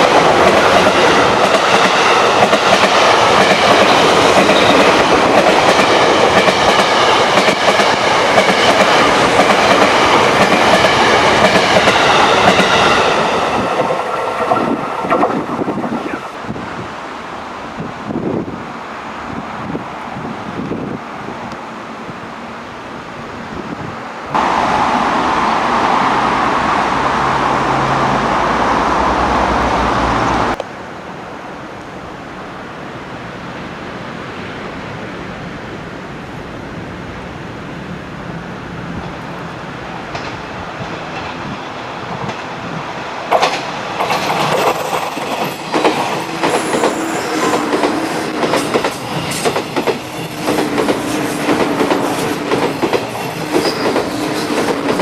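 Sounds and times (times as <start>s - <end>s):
train wheels clacking over rail joints: 0.0s - 16.0s, 43.3s - 55.0s
loud steady rushing noise: 0.0s - 39.1s.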